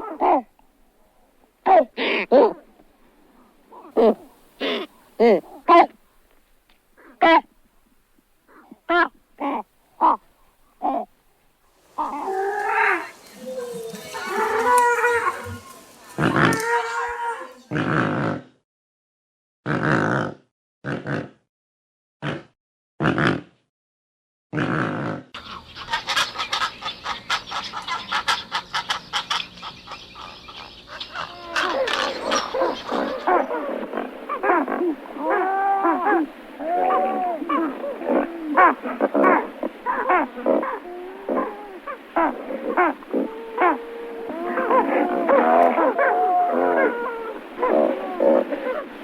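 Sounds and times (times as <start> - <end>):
pelican calls: 3.8 - 5.9, 11.9 - 17.6, 25.4 - 49.0.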